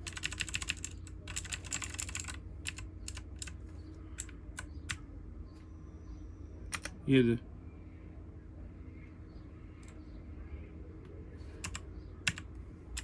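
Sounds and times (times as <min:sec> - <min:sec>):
mechanical keyboard typing: 0:00.0 - 0:05.0, 0:06.7 - 0:07.0, 0:11.6 - 0:13.0.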